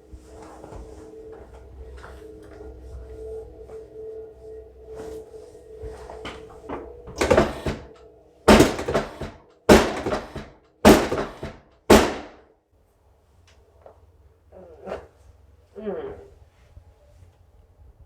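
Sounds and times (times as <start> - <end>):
loud thuds: 8.5 - 12.4.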